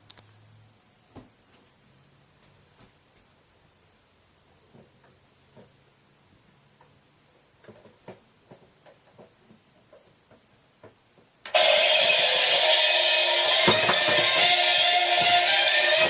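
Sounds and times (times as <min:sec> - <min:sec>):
alarm clock ringing: 0:11.5 - 0:16.0.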